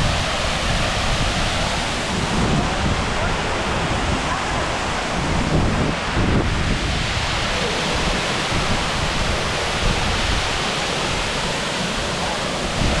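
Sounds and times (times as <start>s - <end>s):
waterfall roaring: 0.0s - 13.0s.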